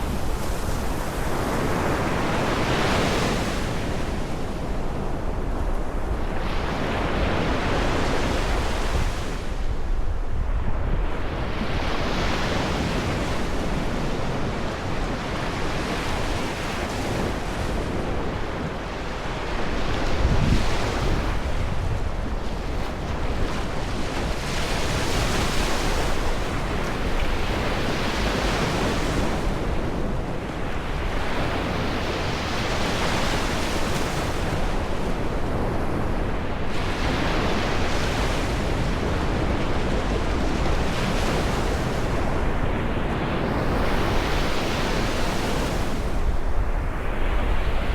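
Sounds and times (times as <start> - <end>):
sea waves breaking: 0.0 - 10.0
wind rumble on microphone: 0.0 - 47.9.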